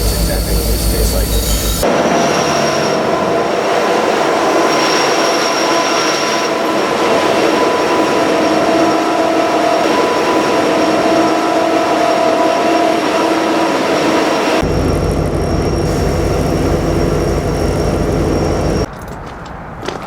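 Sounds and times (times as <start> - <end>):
freight train rumble: 0.0 - 18.9
wheels squealing: 0.0 - 19.3.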